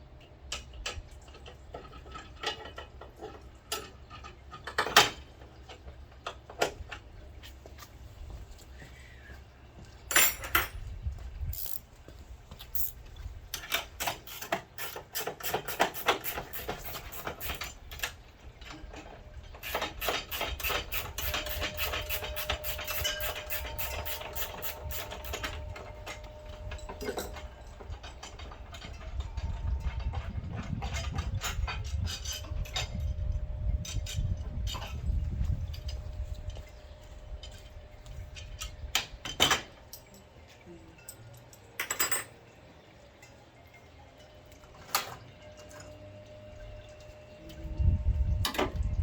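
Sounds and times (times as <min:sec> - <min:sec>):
metal tool clinks: 0:10.1 - 0:10.9
socket ratchet clicking: 0:11.5 - 0:11.8, 0:12.8 - 0:13.0.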